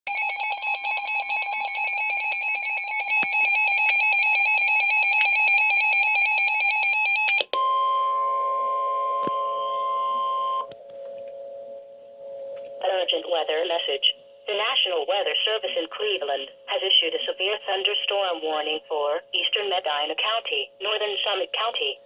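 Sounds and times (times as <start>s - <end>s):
pulsing electronic alarm: 0.1s - 22.0s
faint steady hum: 7.6s - 22.0s
steady high tone: 8.0s - 22.0s.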